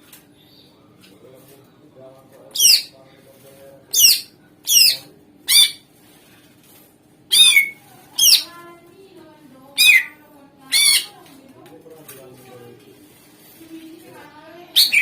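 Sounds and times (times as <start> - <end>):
bird song with sharp calls: 7.3 - 8.5, 14.8 - 15.0.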